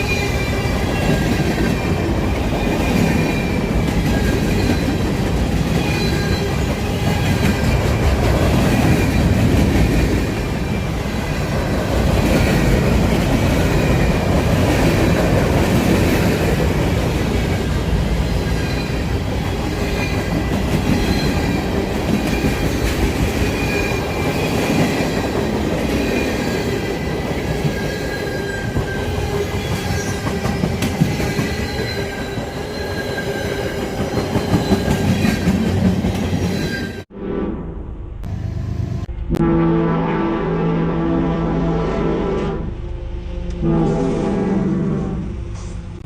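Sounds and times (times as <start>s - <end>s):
freight train rumbling on rails: 0.0s - 37.1s
high wheel squeal: 2.6s - 8.1s, 27.6s - 35.6s.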